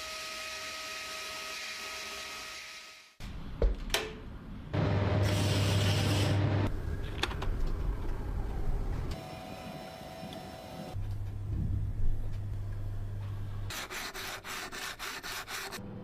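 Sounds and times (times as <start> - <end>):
abrasive rubbing and sanding: 13.7 - 15.8.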